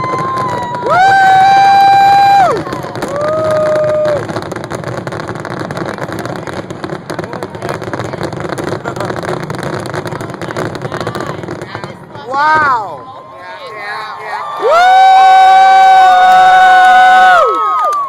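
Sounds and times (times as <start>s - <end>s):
fireworks popping: 0.0s - 14.1s
crowd noise: 0.0s - 18.0s.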